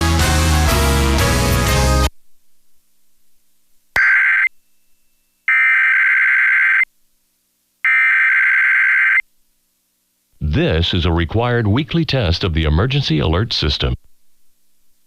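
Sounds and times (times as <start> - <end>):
screeching digital data tones: 4.0 - 4.6.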